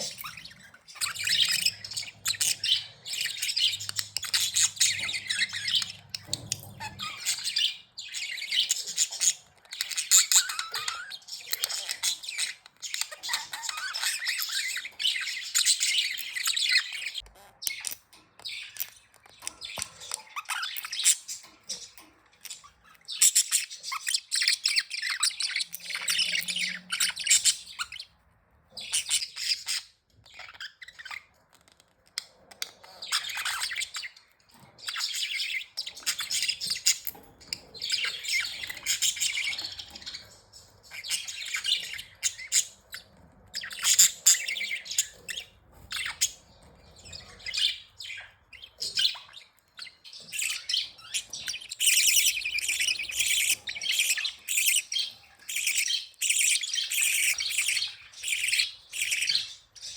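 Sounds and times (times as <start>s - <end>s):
budgies chirping and warbling: 0.0s - 59.9s.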